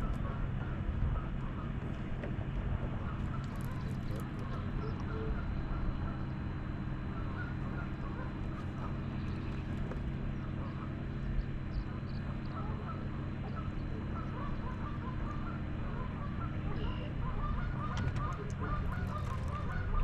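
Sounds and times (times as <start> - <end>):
low motor hum: 0.0 - 20.0
distant waterfowl honking: 2.7 - 20.0.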